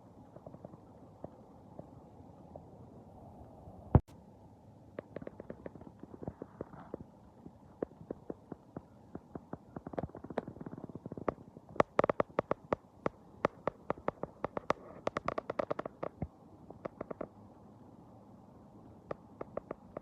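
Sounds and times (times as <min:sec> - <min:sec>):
sharp clicks and pops: 0:05.0 - 0:07.1, 0:07.7 - 0:17.3, 0:19.0 - 0:20.0.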